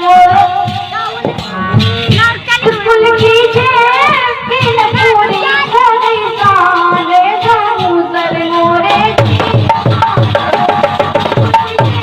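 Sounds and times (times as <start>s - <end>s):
steady drum beat: 0.0s - 12.0s
woman singing folk song: 2.1s - 9.2s.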